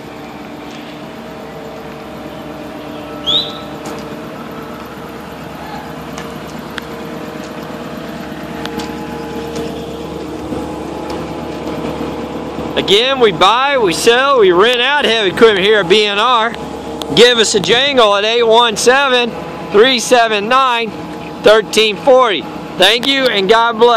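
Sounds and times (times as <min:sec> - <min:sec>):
diesel engine idling: 0:00.0 - 0:23.9
high rising squeak: 0:02.8 - 0:06.0.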